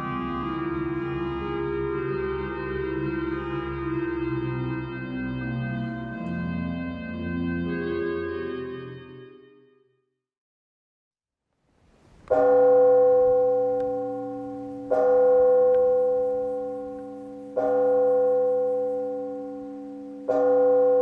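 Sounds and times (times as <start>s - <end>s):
large church bell tolling: 0.0s - 8.9s, 12.3s - 21.0s.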